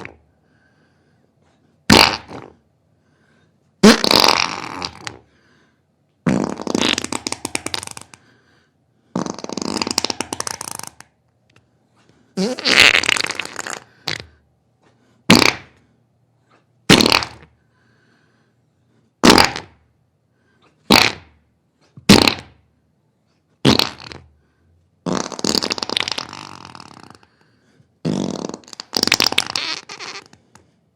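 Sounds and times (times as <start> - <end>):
farts: 0.0 - 0.2, 1.9 - 2.6, 3.8 - 5.2, 6.2 - 8.2, 9.1 - 11.1, 12.4 - 14.4, 15.3 - 15.8, 16.9 - 17.5, 19.2 - 19.8, 20.8 - 21.4, 22.0 - 22.6, 23.6 - 24.3, 25.0 - 27.3, 28.0 - 30.7.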